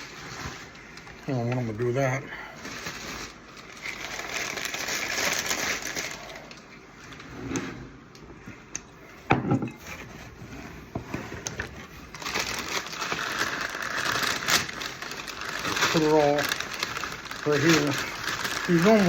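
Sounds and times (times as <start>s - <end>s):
packing paper crumpling: 0.0s - 7.3s, 11.5s - 19.0s.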